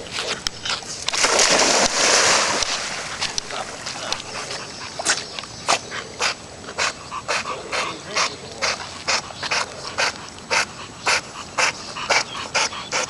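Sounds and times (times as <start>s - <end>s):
dog panting: 3.2s - 13.0s.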